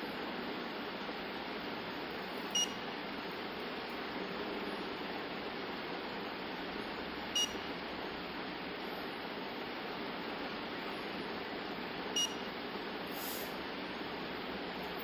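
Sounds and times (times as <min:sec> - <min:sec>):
steady hiss: 0:13.0 - 0:13.6.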